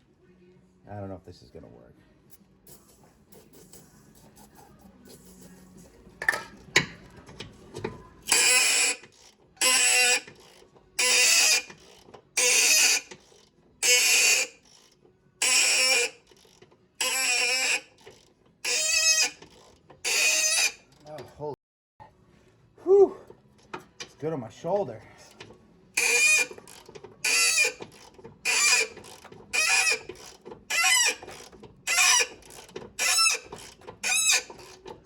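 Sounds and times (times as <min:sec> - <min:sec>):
impact wrench hammering: 0:26.0 - 0:34.8.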